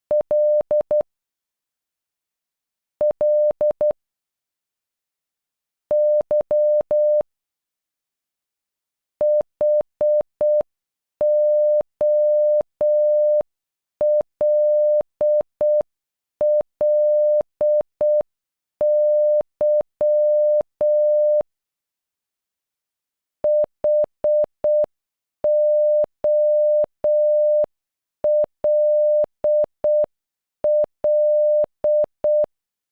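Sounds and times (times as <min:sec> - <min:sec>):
morse code beeps: 0:11.2 - 0:13.4, 0:18.8 - 0:21.4, 0:23.4 - 0:24.9, 0:25.5 - 0:27.7, 0:28.3 - 0:32.5.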